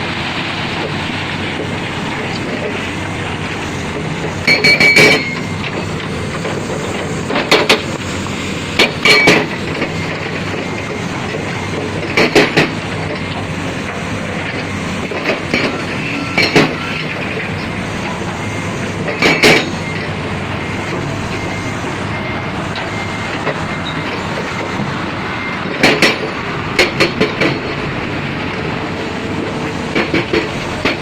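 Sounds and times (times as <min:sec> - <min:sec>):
heavy construction machinery running: 0:00.0 - 0:31.0
loud metallic clanking: 0:08.8 - 0:10.5.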